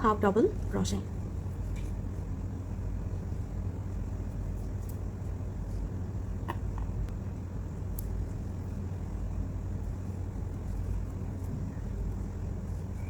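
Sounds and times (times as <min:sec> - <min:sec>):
low background rumble: 0:00.0 - 0:13.0.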